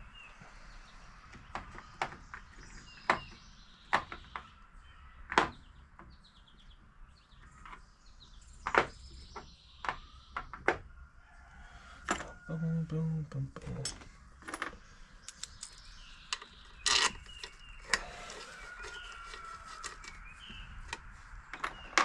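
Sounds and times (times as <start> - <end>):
sharp metal clicks and knocks: 13.6 - 17.6.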